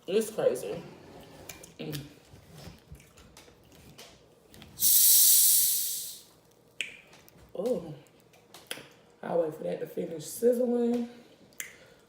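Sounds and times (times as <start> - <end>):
soda fizzing hiss: 4.8 - 6.3.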